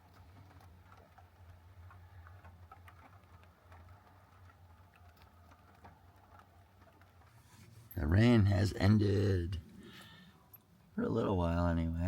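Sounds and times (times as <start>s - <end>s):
raindrops dripping on roof: 0.0s - 12.0s.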